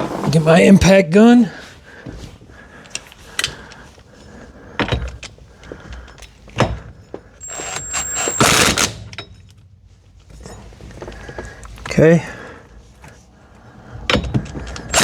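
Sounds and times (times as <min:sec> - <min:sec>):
tools clicking and knocking: 0:04.8 - 0:12.0, 0:14.0 - 0:15.0
impact gun motor whining: 0:07.4 - 0:09.1, 0:14.8 - 0:15.0.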